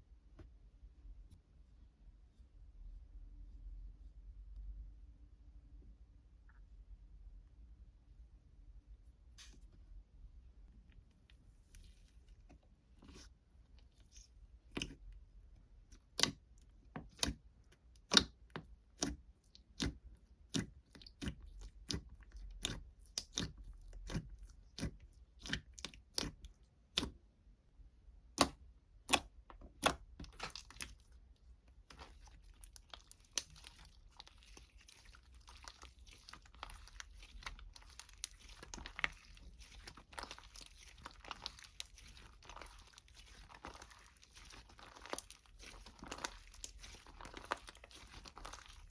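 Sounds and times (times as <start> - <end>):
crunchy food chewing: 30.2 - 48.9
steady crinkling rustle: 30.2 - 48.9.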